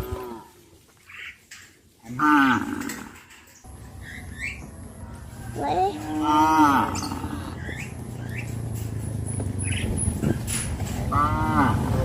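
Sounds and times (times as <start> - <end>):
cow mooing: 5.8 - 7.6, 11.0 - 12.0.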